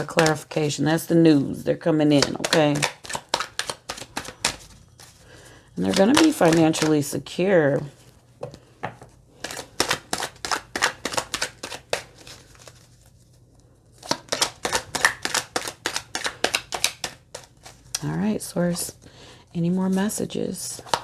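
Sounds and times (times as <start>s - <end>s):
cards being shuffled: 0.0s - 0.7s, 2.1s - 7.0s, 8.5s - 13.2s, 14.0s - 18.1s, 20.8s - 21.0s.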